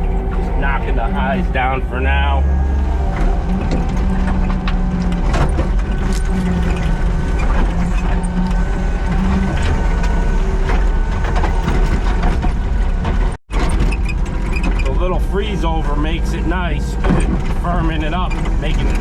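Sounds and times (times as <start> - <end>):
diesel engine running under load: 0.0 - 19.0
machine clanking and rattling: 2.5 - 19.0.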